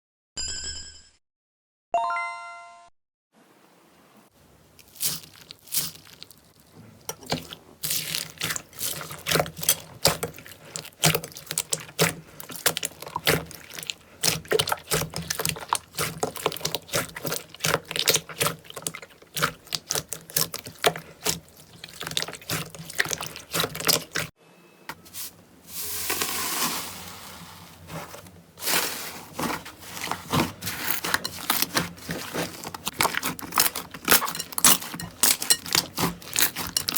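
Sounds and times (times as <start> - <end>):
short chime: 2.0 - 2.9
slime squishing by hand: 4.7 - 24.3, 27.8 - 36.9.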